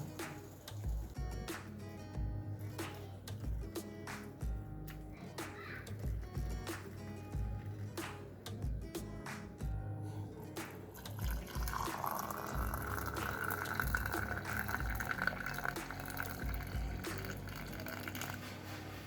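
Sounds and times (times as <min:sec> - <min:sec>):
liquid pouring into a vessel: 0:10.9 - 0:18.6.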